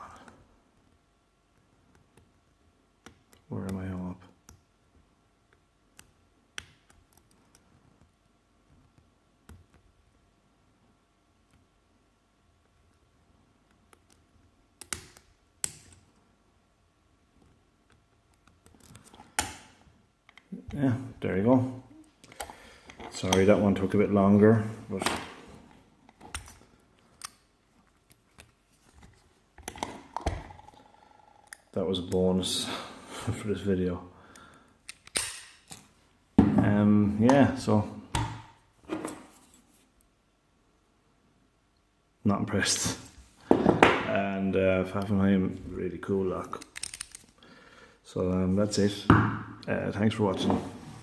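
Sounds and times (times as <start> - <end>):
metallic clicks of lock picking: 34.8 - 35.8, 46.6 - 47.3.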